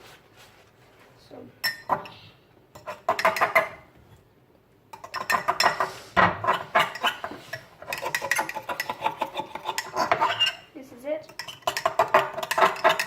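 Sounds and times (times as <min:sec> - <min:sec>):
utensil clinking against bowl: 0:04.9 - 0:10.6, 0:11.2 - 0:13.0.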